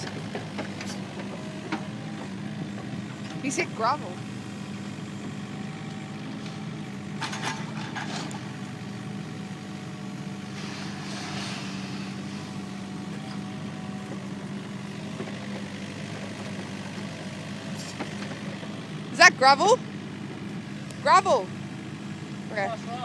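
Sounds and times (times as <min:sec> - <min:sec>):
excavator diesel engine: 0:00.0 - 0:23.0
metal clanks: 0:07.2 - 0:08.5.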